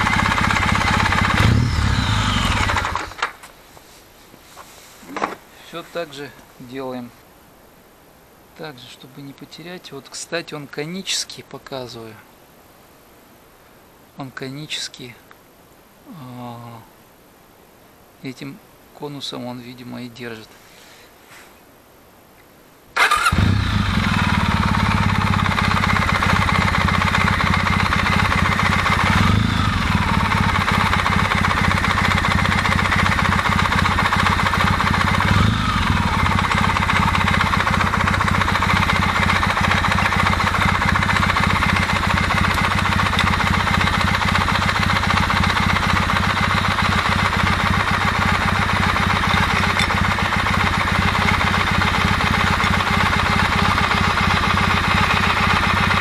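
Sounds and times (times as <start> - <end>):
motorcycle engine idling with knocking: 0.0 - 3.2, 23.1 - 56.0
motorcycle engine revving: 0.0 - 3.4, 23.0 - 56.0.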